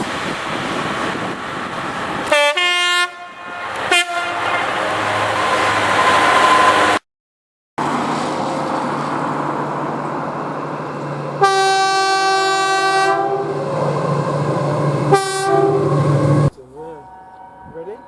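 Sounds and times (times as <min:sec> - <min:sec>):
locomotive rumbling: 0:00.0 - 0:07.0, 0:07.8 - 0:18.0
train air horn: 0:02.3 - 0:07.0, 0:11.4 - 0:13.6, 0:15.1 - 0:16.1.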